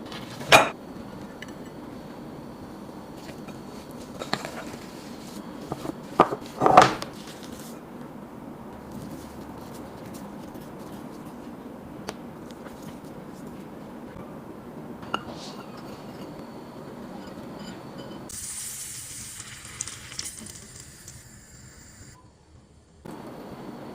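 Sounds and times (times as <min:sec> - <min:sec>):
food frying in hot oil: 0:18.3 - 0:22.2.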